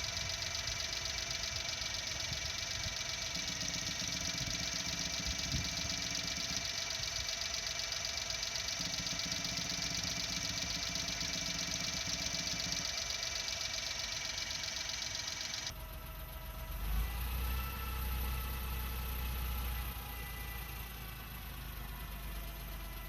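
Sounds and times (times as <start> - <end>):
buzzing rattle of vibrating hose: 0.0 - 15.8
car engine idling: 0.0 - 23.0.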